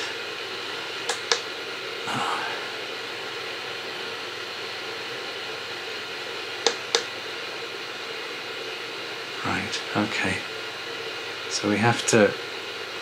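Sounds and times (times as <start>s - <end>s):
projector fan whirring: 0.0s - 13.0s
sharp clicks: 1.0s - 1.5s, 6.6s - 7.1s.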